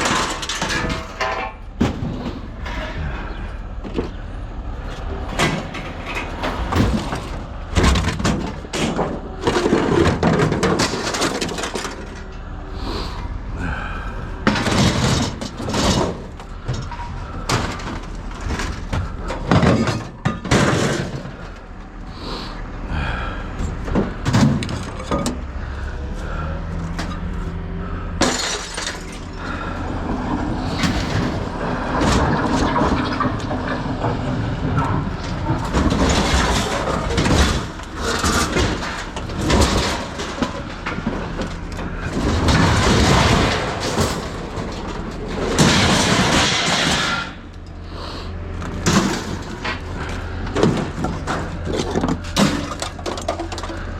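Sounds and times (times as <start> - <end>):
scrap crashing onto a pile: 0.0 - 4.2, 4.9 - 21.6, 23.2 - 27.6, 28.2 - 47.5, 48.5 - 53.9.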